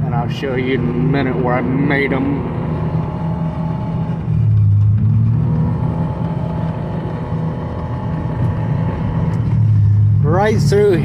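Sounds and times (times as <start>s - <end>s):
vehicle engine humming steadily: 0.0s - 11.0s.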